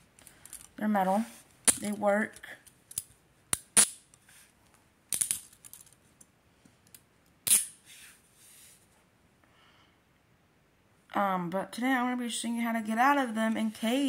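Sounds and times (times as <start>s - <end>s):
faint handcuffs rattling: 0.1s - 0.8s, 5.1s - 6.0s
metal handcuffs clicking: 6.9s - 7.8s.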